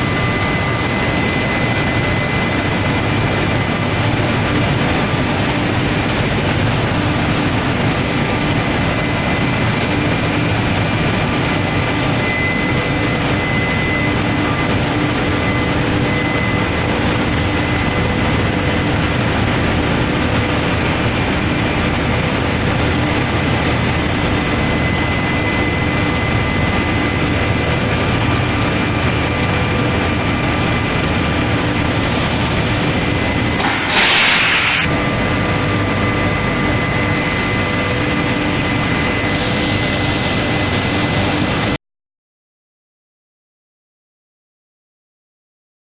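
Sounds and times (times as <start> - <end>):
loud hiss: 33.6 - 34.9.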